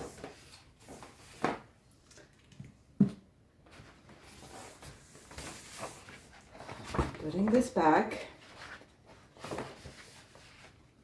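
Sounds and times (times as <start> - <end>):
paper rustling: 8.4 - 11.0.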